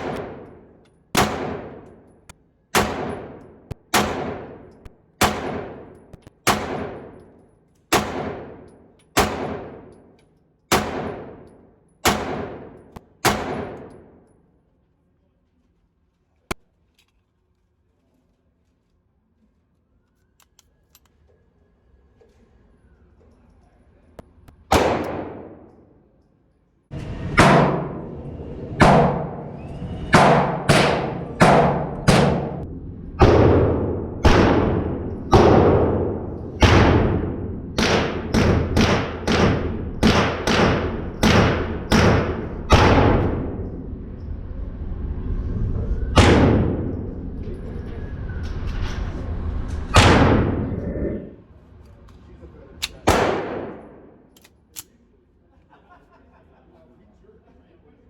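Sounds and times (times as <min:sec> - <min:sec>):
pistol shots: 0:00.0 - 0:02.1, 0:02.7 - 0:10.1, 0:10.7 - 0:14.2, 0:24.7 - 0:25.8, 0:27.3 - 0:28.2, 0:28.8 - 0:43.5, 0:52.8 - 0:54.5.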